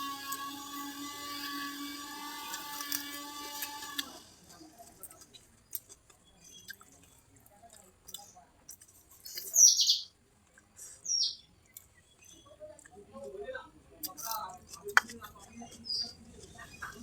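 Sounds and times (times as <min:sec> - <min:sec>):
clicks and smacks of eating: 0:02.5 - 0:09.6, 0:11.6 - 0:17.0.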